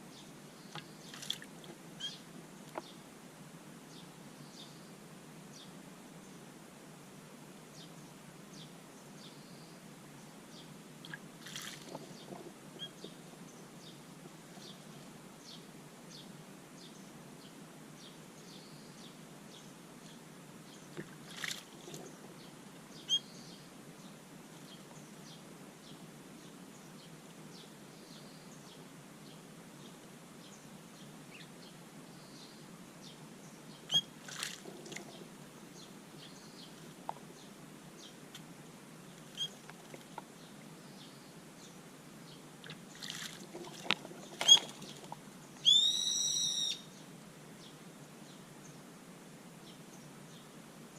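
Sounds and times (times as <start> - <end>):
steady low hiss: 0.0 - 50.9
faint bird chirps: 2.0 - 3.0, 7.7 - 14.0, 14.6 - 38.2, 39.2 - 39.7, 40.4 - 48.8.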